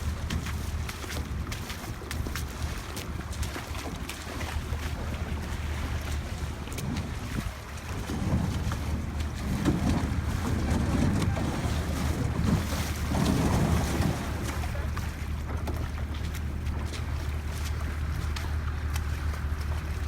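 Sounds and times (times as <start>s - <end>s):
wind buffeting microphone: 0.0s - 20.0s.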